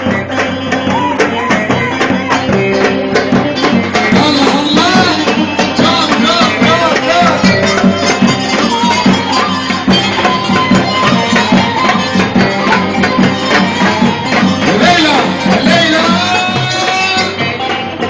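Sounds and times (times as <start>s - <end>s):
fast percussion beat: 0.0s - 18.0s
wavering folk melody: 0.0s - 18.0s.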